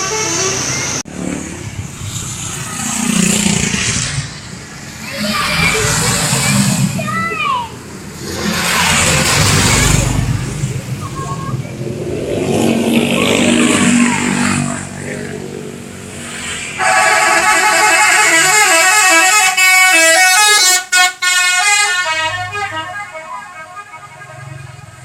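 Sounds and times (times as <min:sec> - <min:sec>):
bus passing: 0:00.0 - 0:25.0
musical air horns tune: 0:16.8 - 0:25.0.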